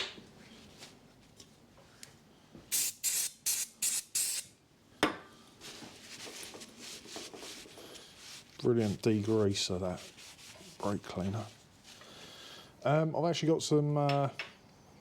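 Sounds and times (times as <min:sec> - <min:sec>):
aerosol spray hissing: 0:02.7 - 0:04.5
rubbing of a wipe: 0:05.6 - 0:12.0.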